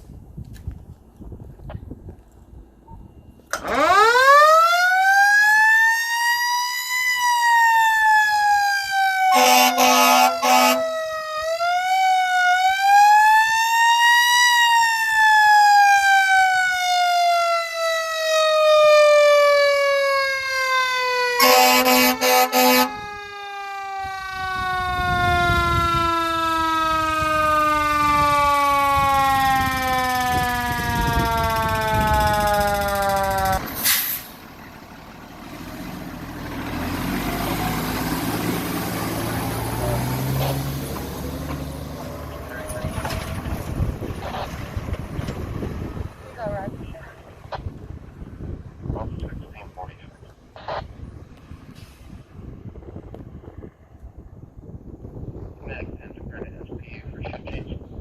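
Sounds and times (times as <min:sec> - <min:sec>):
mechanical siren wailing: 0:02.8 - 0:33.8.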